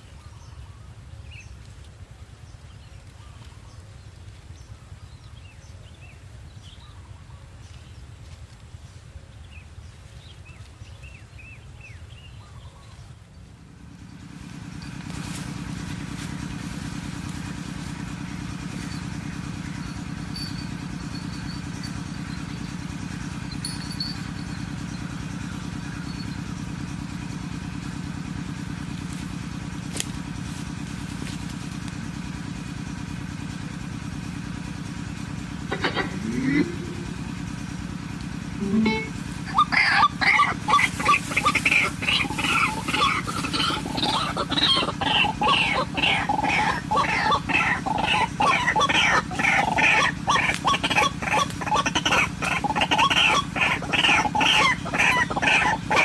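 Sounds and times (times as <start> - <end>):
small engine running: 0.0 - 56.0
low rumble: 35.7 - 39.4.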